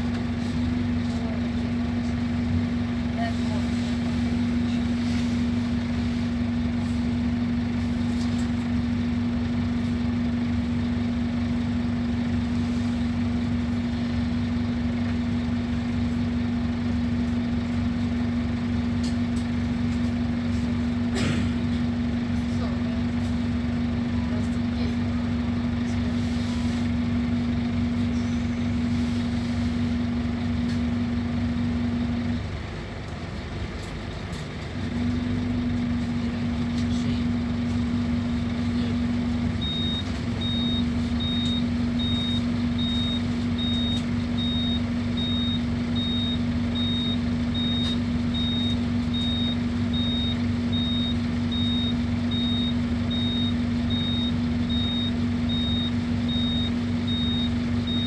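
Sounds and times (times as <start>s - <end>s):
bus engine hum: 0.0s - 58.0s.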